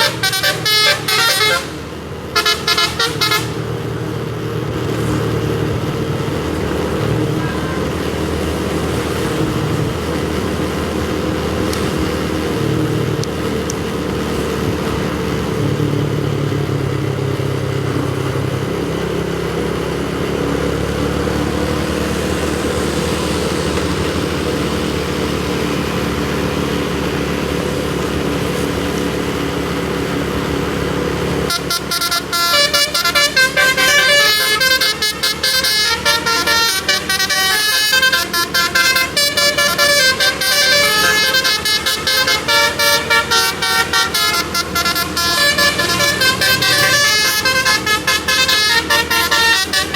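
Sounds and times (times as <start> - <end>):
musical air horn: 0.0 - 4.0, 31.4 - 49.9
traffic engines running: 0.0 - 49.9.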